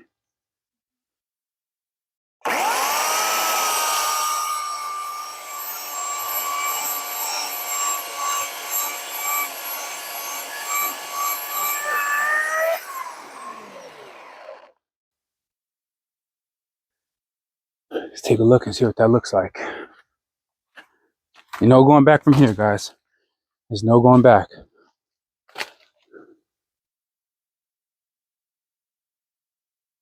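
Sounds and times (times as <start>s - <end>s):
electric chainsaw cutting wood: 2.4s - 14.8s.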